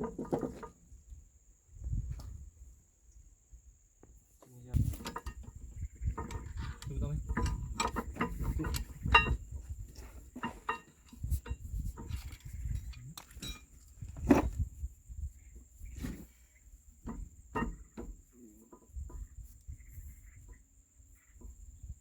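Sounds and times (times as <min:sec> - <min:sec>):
metal tools clinking: 0:04.8 - 0:14.4.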